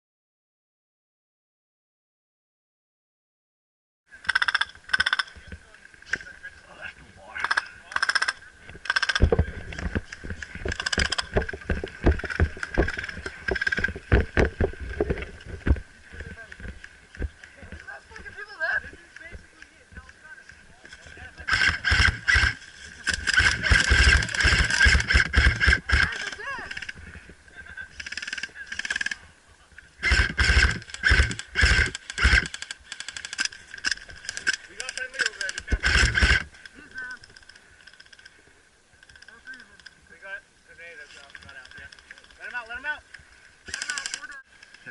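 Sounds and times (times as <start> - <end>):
airsoft gun rapid clicking: 4.2 - 5.3, 7.4 - 14.8, 21.5 - 27.0, 28.0 - 29.2, 30.0 - 38.3, 41.2 - 42.6, 43.6 - 44.8.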